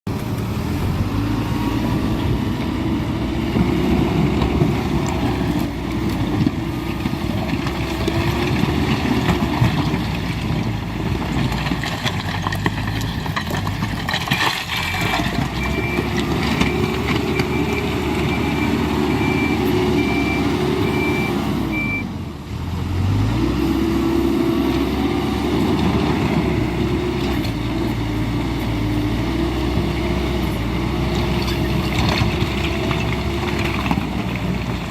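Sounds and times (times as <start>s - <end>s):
diesel engine working: 0.1s - 34.9s
reversing beeps: 14.9s - 22.1s.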